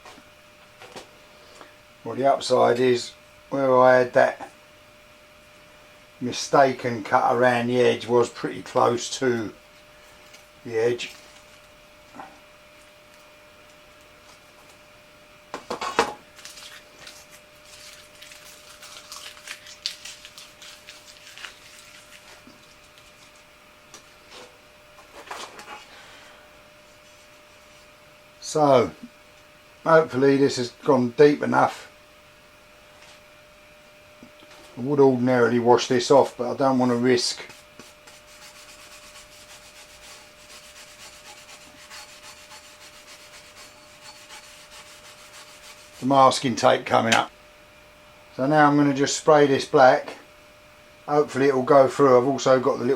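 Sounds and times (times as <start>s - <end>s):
faint steady hum: 0.0s - 52.9s
rubbing strokes on a plate: 16.6s - 23.2s, 36.2s - 46.6s.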